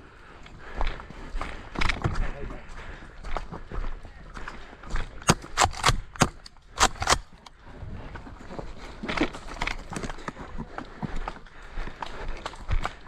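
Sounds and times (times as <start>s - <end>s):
airsoft gun shots: 5.3s - 7.3s.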